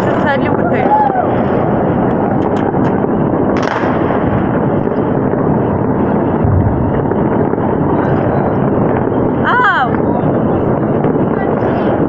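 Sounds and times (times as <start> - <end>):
distant fireworks rumble: 0.0 - 12.0
wind on microphone: 0.0 - 12.0
sharp crack: 3.5 - 4.4, 6.4 - 7.8.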